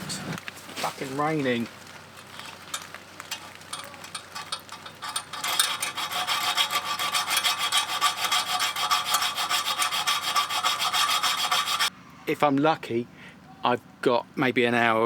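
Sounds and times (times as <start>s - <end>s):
hacksaw cutting metal: 3.3s - 11.9s.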